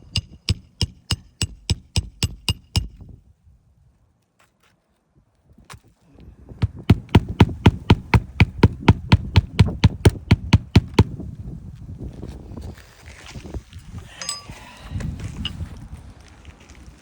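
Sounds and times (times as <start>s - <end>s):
hammer striking metal bar: 0.0s - 3.0s, 6.6s - 11.1s
soft irregular knocking: 0.0s - 3.0s, 6.6s - 11.1s.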